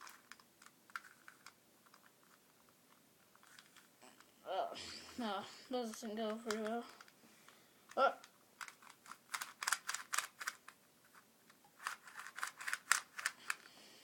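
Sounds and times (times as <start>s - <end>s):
puzzle layers clicking: 5.9s - 7.2s, 7.9s - 10.8s, 11.8s - 13.7s.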